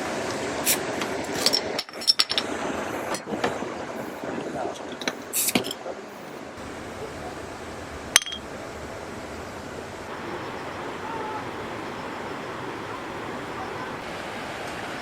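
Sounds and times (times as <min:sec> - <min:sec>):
rushing flowing water: 0:00.0 - 0:15.0
sharp clinks: 0:08.2 - 0:08.4.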